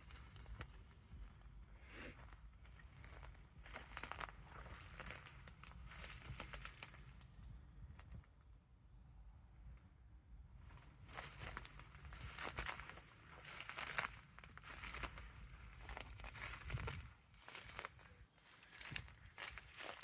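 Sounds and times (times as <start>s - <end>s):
footsteps crunching through leaves: 2.8s - 7.1s, 10.8s - 20.0s.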